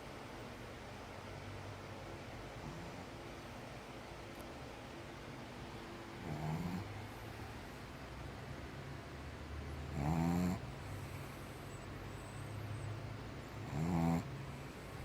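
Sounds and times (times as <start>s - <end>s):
steady low hum: 0.0s - 15.0s
dog snoring: 6.2s - 7.5s, 9.7s - 12.6s, 13.4s - 15.0s.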